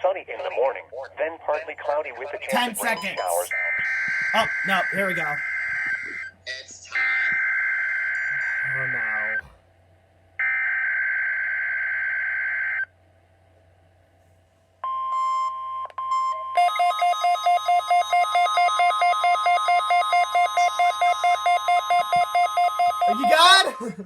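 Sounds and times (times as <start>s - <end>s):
rapidly pulsing beep: 2.5s - 6.3s, 18.2s - 24.0s
steady alarm tone: 2.5s - 6.3s, 16.7s - 24.0s.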